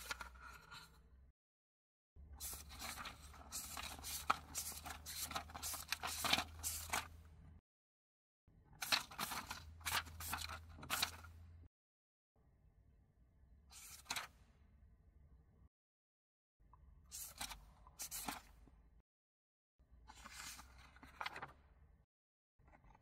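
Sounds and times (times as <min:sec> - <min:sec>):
paper pages turning: 0:00.0 - 0:00.9, 0:02.4 - 0:07.2, 0:08.8 - 0:11.3, 0:13.8 - 0:14.3, 0:17.1 - 0:18.5, 0:20.1 - 0:21.6.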